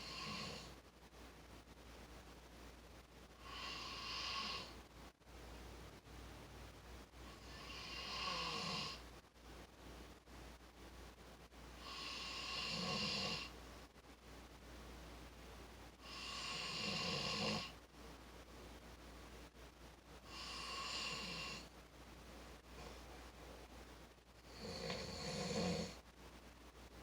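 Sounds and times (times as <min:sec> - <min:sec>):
person snoring: 0:00.0 - 0:00.7, 0:03.4 - 0:04.8, 0:07.4 - 0:09.0, 0:11.8 - 0:13.5, 0:16.0 - 0:17.8, 0:20.3 - 0:21.7, 0:24.5 - 0:26.0.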